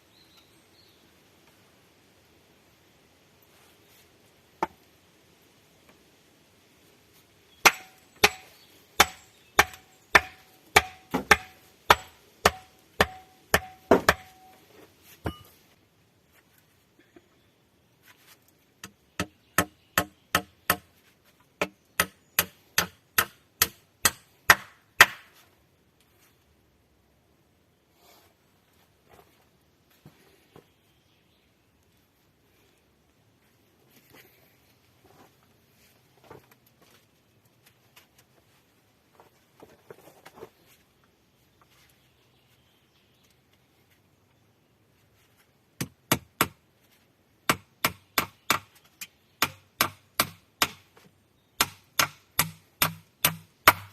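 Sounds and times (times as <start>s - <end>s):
hand tool striking wood: 7.6s - 14.6s, 15.2s - 15.5s, 18.8s - 20.9s, 21.6s - 25.3s, 47.5s - 50.8s, 51.6s - 53.9s.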